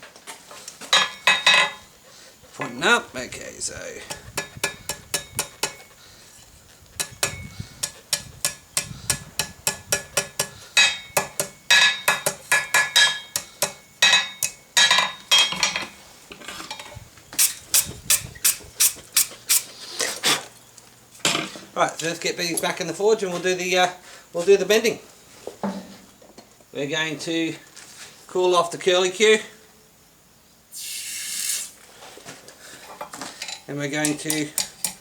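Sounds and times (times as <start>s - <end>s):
hammer striking steel on anvil: 4.1s - 5.8s, 7.0s - 15.7s.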